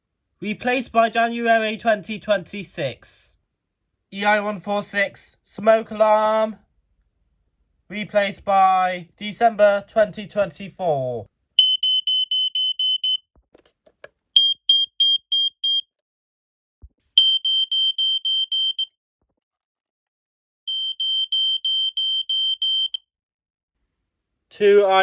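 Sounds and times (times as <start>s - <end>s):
smoke alarm beeping: 11.6s - 13.2s, 14.4s - 15.9s, 17.2s - 18.9s, 20.7s - 23.1s.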